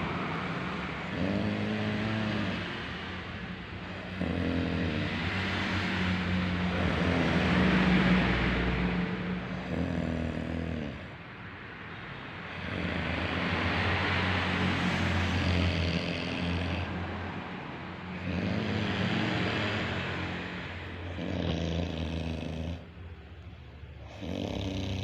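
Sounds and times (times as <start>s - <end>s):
woman snoring: 1.1s - 2.6s, 9.7s - 11.1s, 18.2s - 20.0s, 21.2s - 22.9s, 24.1s - 25.0s.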